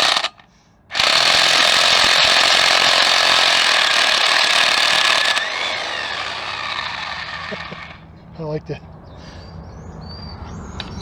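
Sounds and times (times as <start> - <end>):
impact wrench hammering: 0.9 - 7.2.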